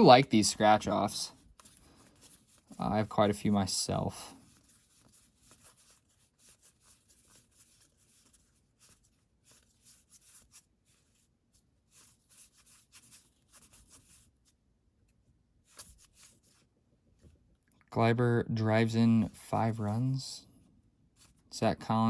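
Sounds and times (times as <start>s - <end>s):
trading cards rustling: 0.4s - 11.2s, 15.6s - 16.7s, 19.1s - 20.3s.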